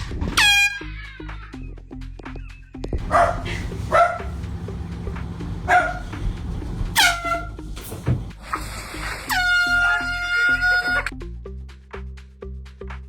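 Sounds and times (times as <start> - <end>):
dog barking: 3.0 - 7.6
horn blasts: 3.0 - 8.3.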